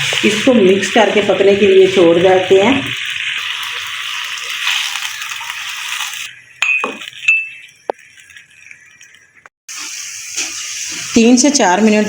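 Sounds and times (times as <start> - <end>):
pan hissing on stove: 0.0 - 12.0
kitchenware clinks: 6.6 - 7.7.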